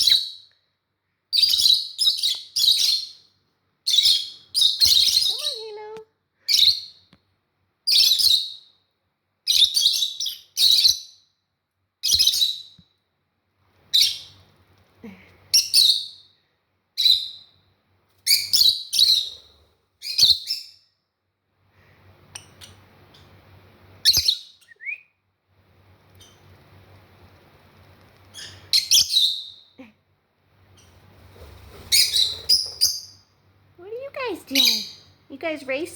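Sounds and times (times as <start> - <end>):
parrots calling: 31.9 - 33.2, 34.2 - 35.2.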